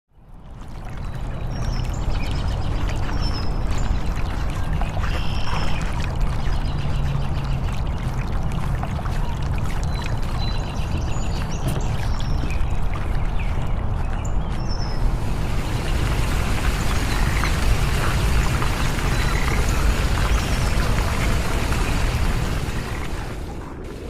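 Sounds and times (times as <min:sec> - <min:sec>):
running water: 0:00.2 - 0:24.0.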